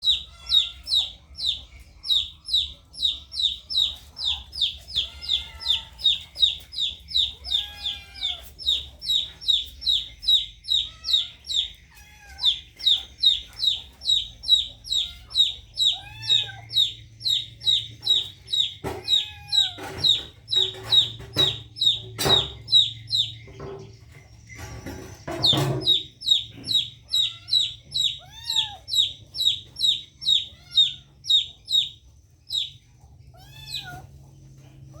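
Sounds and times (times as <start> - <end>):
young fowl peeping: 0.0 - 35.0
sharp knocks: 18.0 - 26.8.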